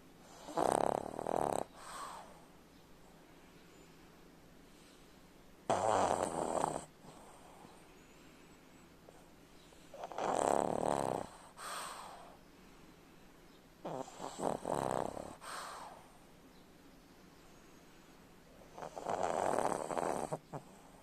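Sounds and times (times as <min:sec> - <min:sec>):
dog snoring: 0:00.2 - 0:02.4, 0:05.7 - 0:07.8, 0:09.9 - 0:12.4, 0:13.8 - 0:16.1, 0:18.6 - 0:21.0.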